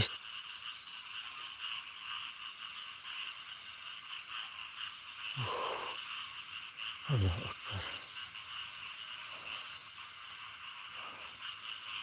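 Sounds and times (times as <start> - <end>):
high pulsing animal chirring: 4.4 - 12.0.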